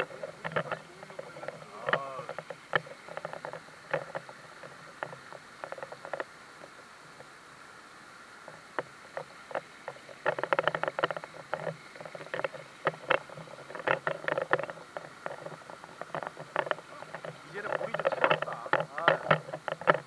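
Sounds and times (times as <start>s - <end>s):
stream water splashing over rocks: 0.0s - 20.0s.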